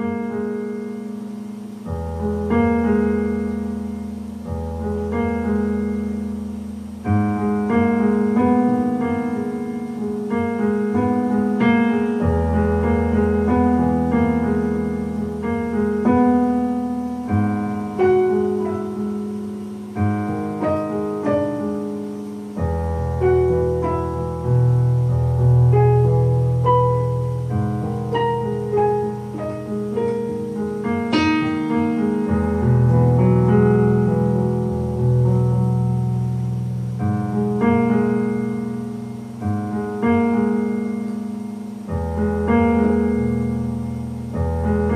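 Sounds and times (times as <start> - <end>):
electronic keyboard piano melody: 0.0 - 44.9.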